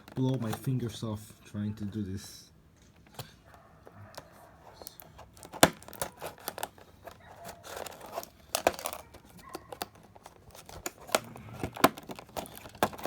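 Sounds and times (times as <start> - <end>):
toy packaging tearing and crinkling: 0.0 - 1.0, 3.0 - 13.0.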